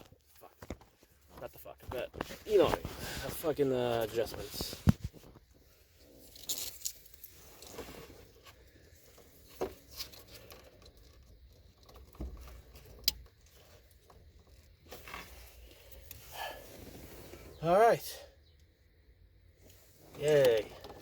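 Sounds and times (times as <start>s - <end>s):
hands rustling wiring: 0.0s - 16.4s.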